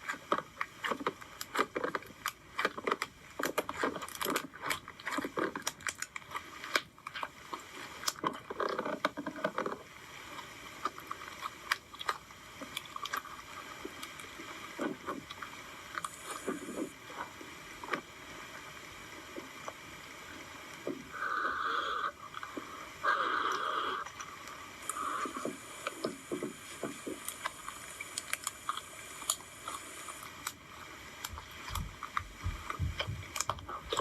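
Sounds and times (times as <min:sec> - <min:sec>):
slime squishing with sticky pops: 0:00.0 - 0:18.1, 0:31.2 - 0:34.0.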